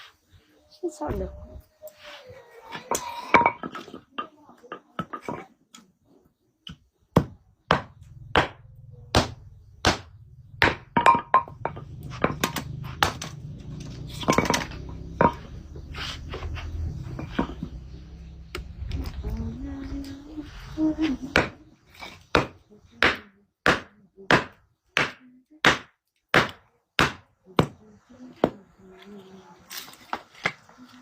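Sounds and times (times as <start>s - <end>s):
low steady hum: 8.0s - 22.0s.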